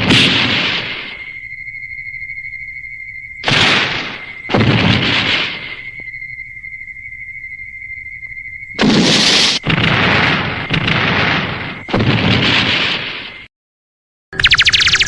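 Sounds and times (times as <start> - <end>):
explosion blasts: 0.0 - 1.2, 3.4 - 5.9, 8.8 - 13.5
high electronic tone: 14.4 - 15.0.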